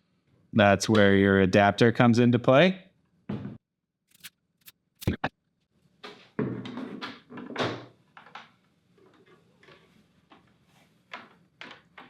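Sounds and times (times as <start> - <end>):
sharp clicks: 5.0 - 5.3.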